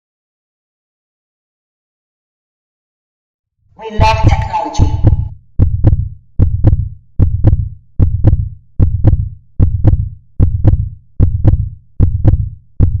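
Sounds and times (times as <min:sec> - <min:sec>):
heartbeat thumping: 0:04.0 - 0:13.0.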